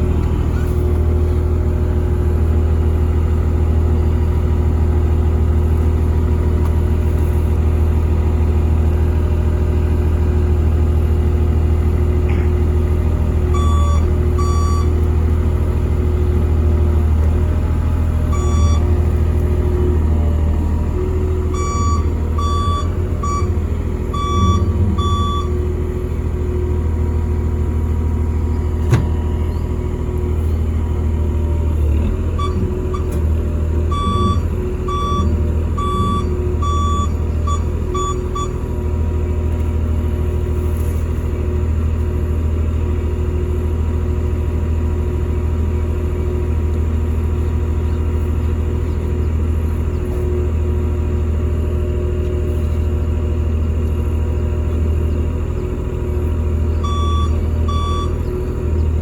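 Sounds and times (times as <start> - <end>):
diesel engine running: 0.0 - 59.0
warning alarm beeping: 13.6 - 14.9, 18.3 - 18.9, 21.5 - 25.5, 33.9 - 38.6, 56.8 - 58.2.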